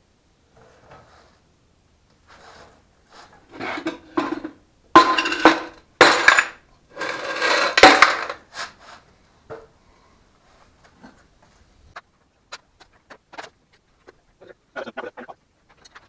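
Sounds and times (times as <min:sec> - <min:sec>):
metal engine parts clanking: 0:03.5 - 0:08.4.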